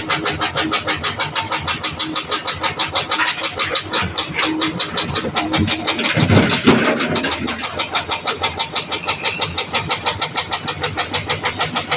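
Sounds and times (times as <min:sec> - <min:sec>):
diesel engine running: 0:00.0 - 0:11.9
low rumble with knock: 0:04.0 - 0:07.7.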